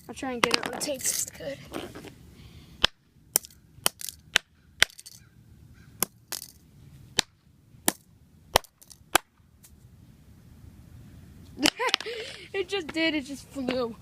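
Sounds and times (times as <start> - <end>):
fidget spinner being smashed: 3.4 - 4.2, 6.0 - 6.6.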